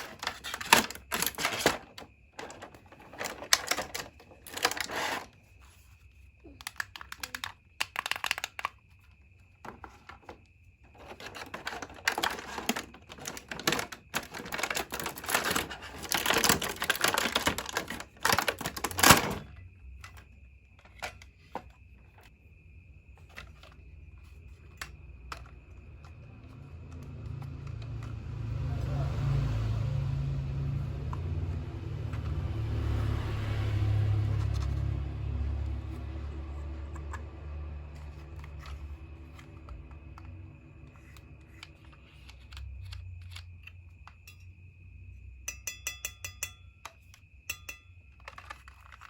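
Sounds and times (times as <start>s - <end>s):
plastic crinkling and clicking: 0.0s - 5.3s, 6.4s - 20.2s, 48.1s - 49.0s
faint steady high tone: 45.4s - 48.2s.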